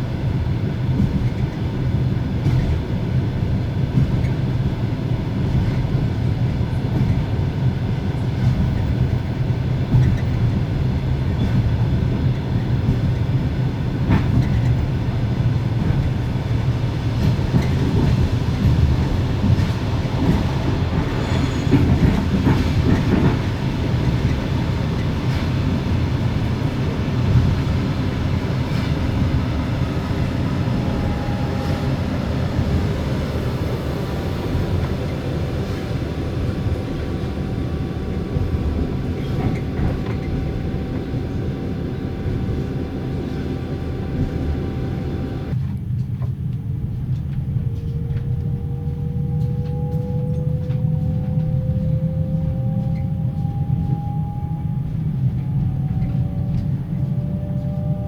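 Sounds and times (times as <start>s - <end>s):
train wheels clacking on rails: 0.0s - 58.0s
generator humming: 25.8s - 45.5s.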